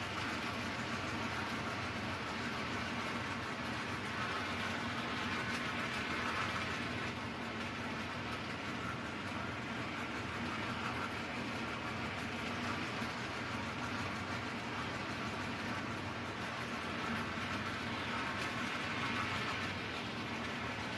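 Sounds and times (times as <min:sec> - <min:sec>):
toy train motor whirring: 0:02.2 - 0:07.1, 0:12.9 - 0:20.9.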